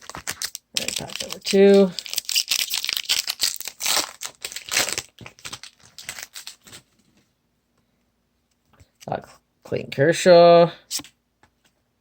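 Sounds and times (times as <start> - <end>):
wrapper tearing and crinkling: 0.0 - 6.9.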